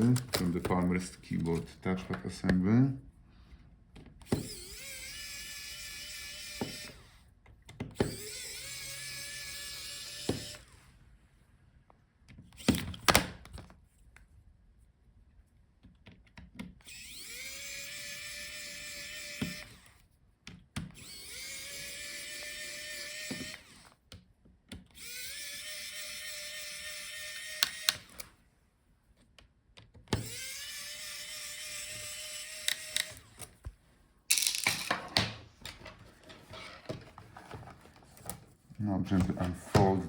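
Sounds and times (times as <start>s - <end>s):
electric screwdriver whining: 0.0s - 1.6s, 4.2s - 7.3s, 7.9s - 10.9s, 12.5s - 13.4s, 16.8s - 20.1s, 20.8s - 24.1s, 24.8s - 28.4s, 30.1s - 33.6s
sharp clicks of parts handled: 0.0s - 2.3s, 34.3s - 35.8s
parts clattering: 34.3s - 38.6s.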